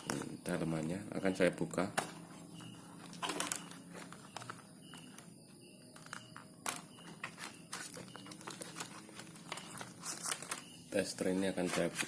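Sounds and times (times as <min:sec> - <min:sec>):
tools being handled: 0:02.0 - 0:05.3, 0:06.0 - 0:12.0.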